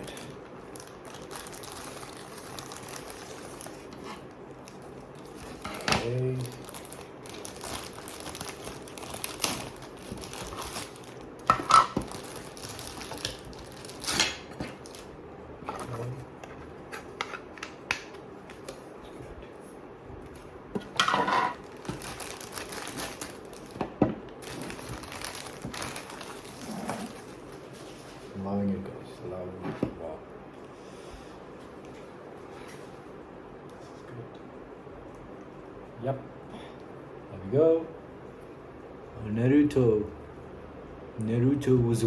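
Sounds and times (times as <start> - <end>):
sharp plastic crackles: 0.0 - 4.0, 4.6 - 15.2, 21.6 - 27.3
packaging crinkling and rustling: 0.0 - 17.6, 21.1 - 28.2.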